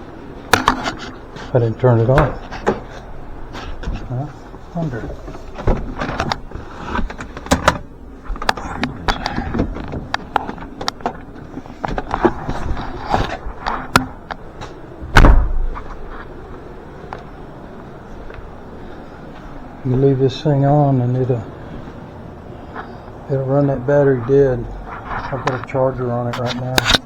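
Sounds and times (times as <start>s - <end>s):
hands working in a car: 5.0s - 14.8s
car door shutting: 15.0s - 15.9s.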